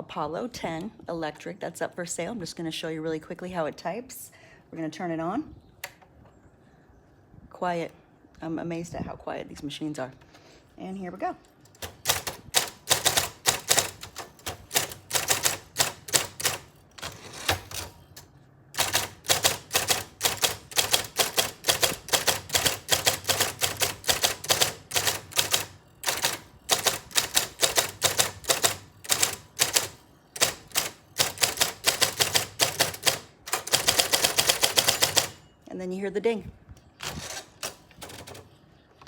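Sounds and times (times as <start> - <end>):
typewriter key strikes: 11.7 - 35.4
typewriter motor hum: 11.7 - 35.4, 37.0 - 38.5.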